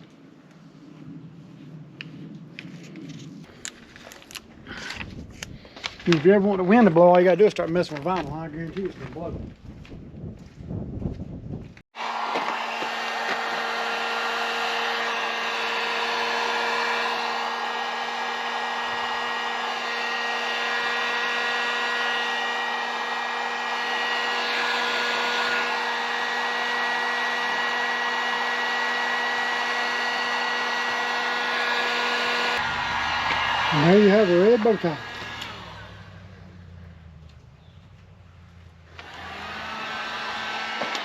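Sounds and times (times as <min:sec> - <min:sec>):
heat gun running: 0:12.0 - 0:36.8, 0:38.9 - 0:41.0.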